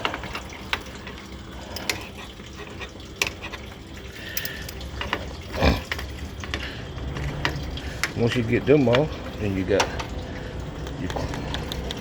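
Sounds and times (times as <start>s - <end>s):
hand tools clinking on metal: 4.1s - 5.3s.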